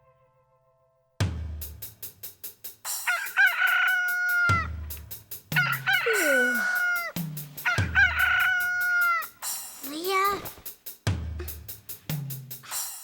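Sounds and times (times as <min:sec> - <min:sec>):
drum beat with hi-hat: 0:01.2 - 0:13.0
rooster crowing: 0:03.0 - 0:04.8, 0:05.6 - 0:09.4.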